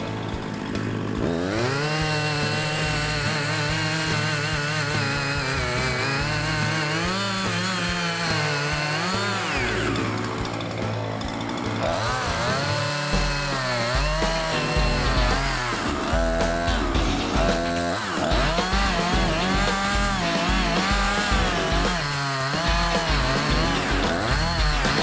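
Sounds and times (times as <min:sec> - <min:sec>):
chainsaw running: 0:00.0 - 0:25.0.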